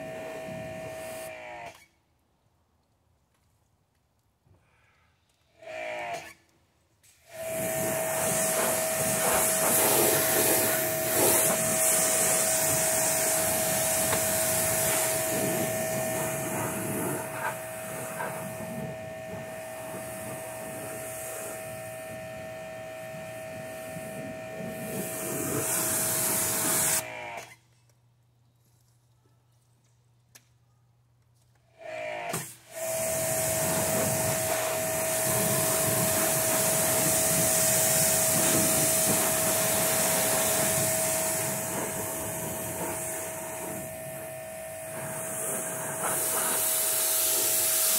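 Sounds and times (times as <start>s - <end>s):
pressure washer motor whine: 0.0s - 1.7s, 7.3s - 27.4s, 31.8s - 47.9s
water spray hissing: 7.5s - 22.5s, 23.1s - 27.0s, 32.8s - 47.9s.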